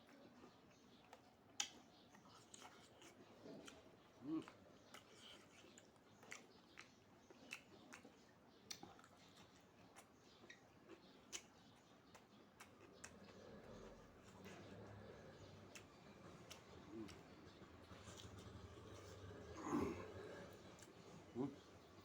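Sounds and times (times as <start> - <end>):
person chewing food: 0.3 - 22.0.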